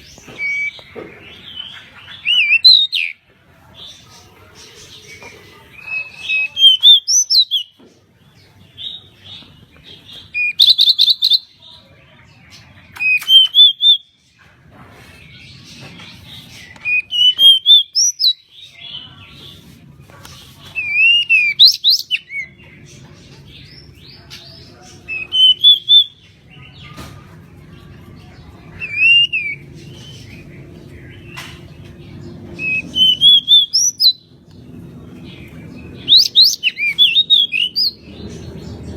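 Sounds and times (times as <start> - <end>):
bird singing whistled notes: 10.4 - 11.4, 32.6 - 34.2, 36.0 - 38.0.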